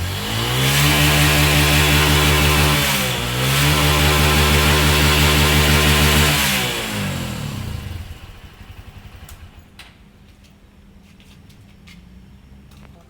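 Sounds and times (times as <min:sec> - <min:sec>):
motorcycle engine revving down: 0:00.0 - 0:09.6.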